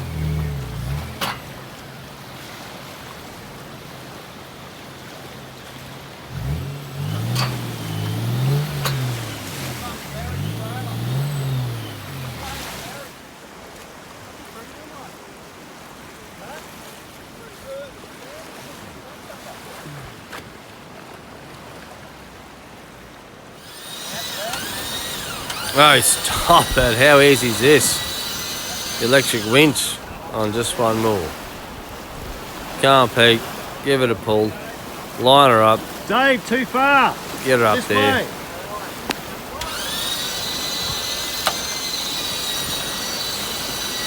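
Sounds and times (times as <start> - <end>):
engine revving: 0.0 - 2.6, 5.2 - 13.1, 23.6 - 34.5, 35.1 - 38.4, 39.0 - 44.0
surf washing: 0.0 - 44.0
wind: 0.0 - 44.0.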